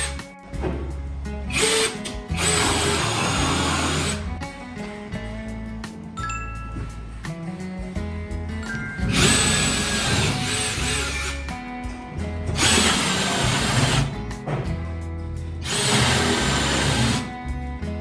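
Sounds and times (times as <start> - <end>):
background music: 0.0 - 18.0
power tool whining: 1.5 - 4.3, 9.1 - 11.5, 12.5 - 14.1, 15.6 - 17.3.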